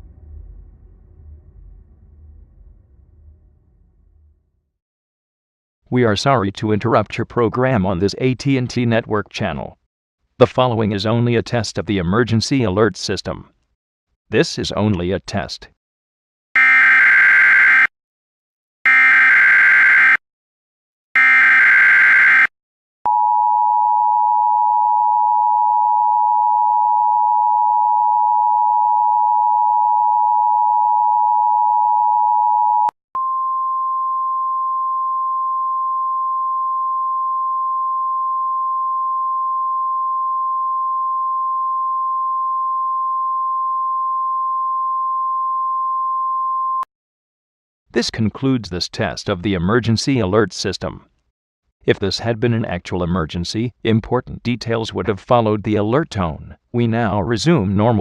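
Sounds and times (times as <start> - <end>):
single steady tone: 23.1 - 46.9.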